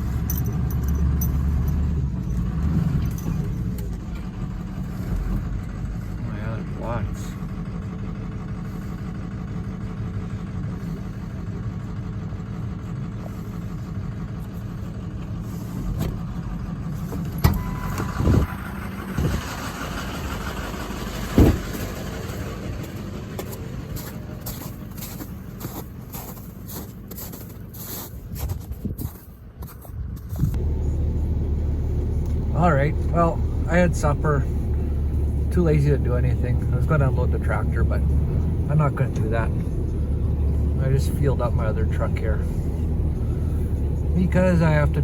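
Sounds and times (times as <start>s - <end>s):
truck engine and road noise: 0.0s - 45.0s
steady low hum: 22.6s - 45.0s.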